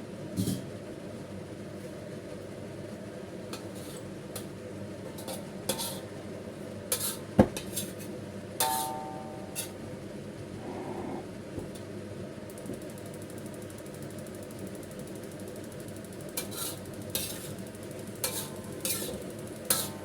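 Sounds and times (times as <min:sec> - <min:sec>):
utensils clinking against a pot: 0:08.6 - 0:09.8, 0:18.2 - 0:20.0.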